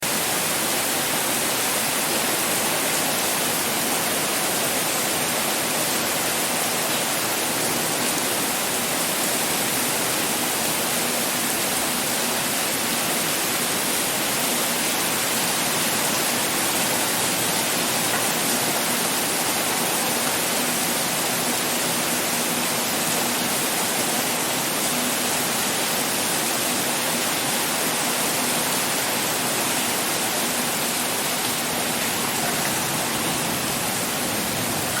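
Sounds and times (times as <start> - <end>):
pouring rain: 0.0 - 35.0.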